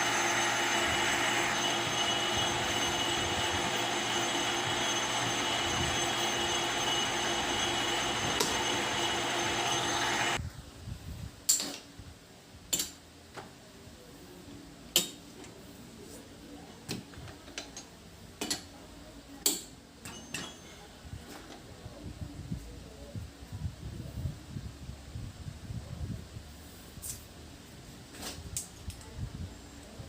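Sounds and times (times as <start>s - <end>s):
lathe humming: 0.0s - 10.4s.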